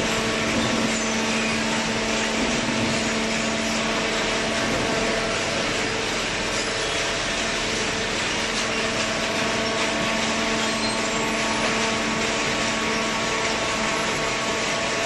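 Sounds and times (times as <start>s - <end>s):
baler machine running: 0.0s - 15.0s
pump motor hum: 0.0s - 15.0s.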